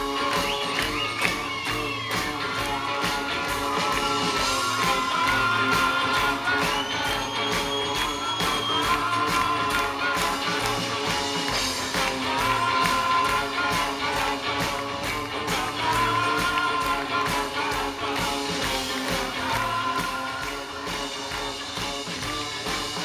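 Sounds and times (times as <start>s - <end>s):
bass guitar: 0.0s - 23.0s
drum kit beat: 0.0s - 23.0s
guitar: 0.0s - 23.0s.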